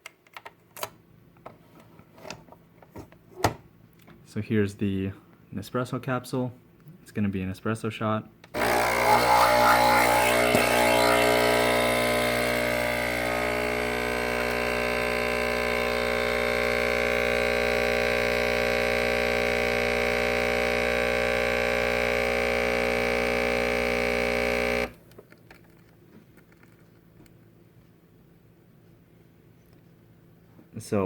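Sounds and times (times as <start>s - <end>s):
espresso machine pump buzzing: 8.6s - 25.0s.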